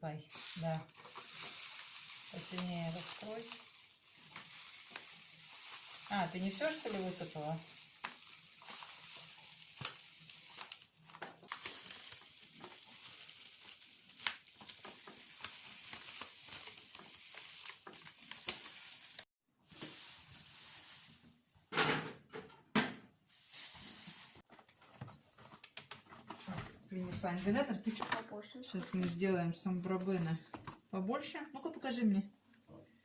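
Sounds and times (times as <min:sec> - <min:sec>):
coffee grounds trickling: 0:00.3 - 0:21.3, 0:23.3 - 0:24.4
packet rustling: 0:00.3 - 0:21.3.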